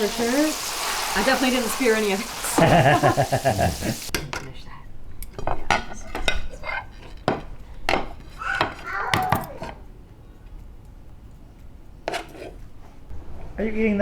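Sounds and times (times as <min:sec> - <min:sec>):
dishes and utensils clinking: 0:05.2 - 0:09.9.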